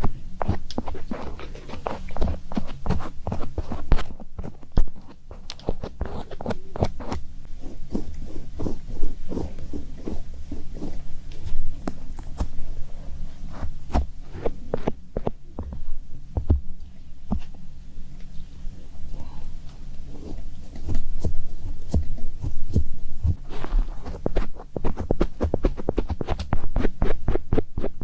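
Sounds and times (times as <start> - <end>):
low steady hum: 0.0 - 28.0.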